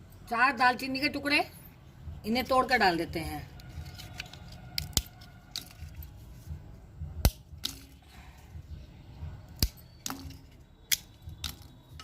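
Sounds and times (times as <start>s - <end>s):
cinnamon sticks snapping: 3.6s - 5.8s, 7.2s - 8.0s, 9.6s - 12.0s.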